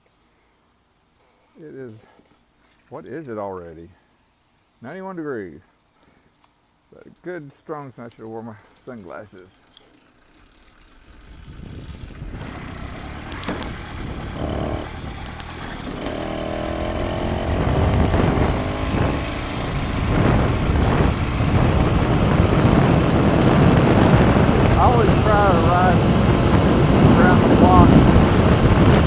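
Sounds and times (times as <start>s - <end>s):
small engine starting and pulling away: 9.6s - 29.0s
wind rushing over microphone: 11.1s - 29.0s.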